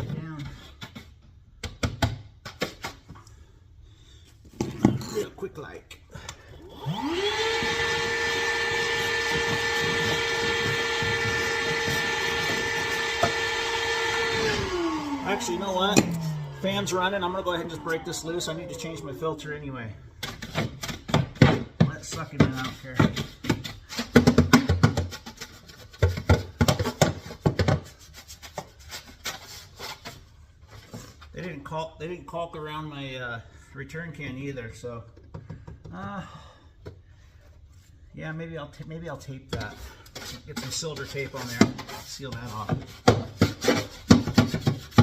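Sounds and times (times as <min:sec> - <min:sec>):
system fan: 0:06.8 - 0:19.0
power tool motor whining: 0:06.8 - 0:19.1
brush scraping inside a duct: 0:39.9 - 0:45.0.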